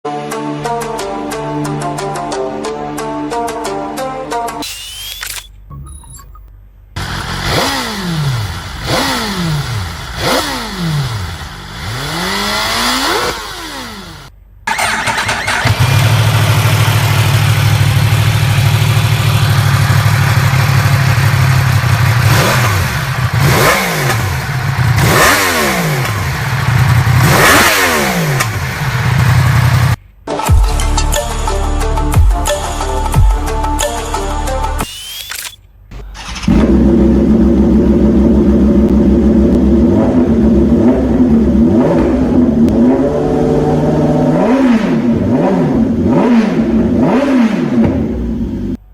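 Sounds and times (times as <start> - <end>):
motorcycle engine revving: 7.0 - 30.0, 36.2 - 48.8
motorcycle engine idling: 14.8 - 23.5.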